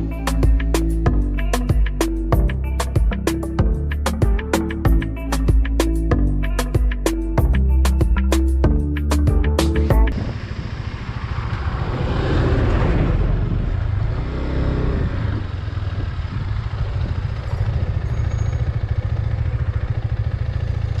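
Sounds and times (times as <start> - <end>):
motorcycle engine running: 0.0 - 21.0
wind and road noise: 9.6 - 21.0.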